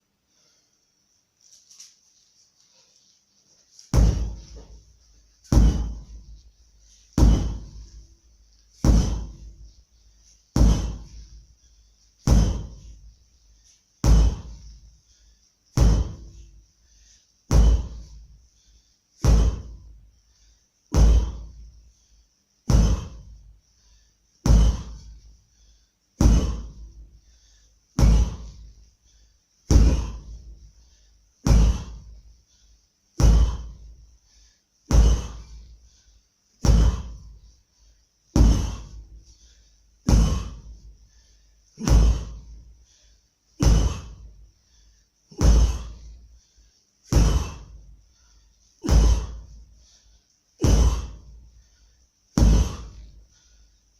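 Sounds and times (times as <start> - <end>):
sledgehammer blows: 3.9 - 4.8, 5.5 - 6.2, 7.2 - 7.9, 8.8 - 9.6, 10.6 - 11.2, 12.2 - 13.0, 14.0 - 14.6, 15.8 - 16.4, 17.5 - 18.2, 19.2 - 19.8, 20.9 - 21.5, 22.7 - 23.3, 24.5 - 25.1, 26.2 - 26.8, 28.0 - 28.6, 29.7 - 30.4, 31.4 - 32.1, 33.2 - 33.8, 34.9 - 35.6, 36.6 - 37.2, 38.4 - 39.0, 40.1 - 40.7, 41.8 - 42.5, 43.6 - 44.2, 45.3 - 46.1, 47.1 - 47.7, 48.8 - 49.4, 50.6 - 51.3, 52.4 - 53.1.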